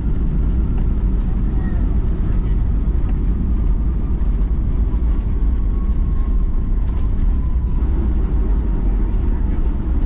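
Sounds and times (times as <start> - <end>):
airplane cabin low rumble: 0.0 - 10.0.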